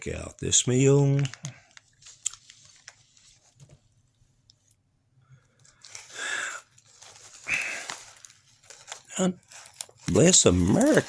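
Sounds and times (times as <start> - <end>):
packaging rustling and tearing: 5.7 - 11.0.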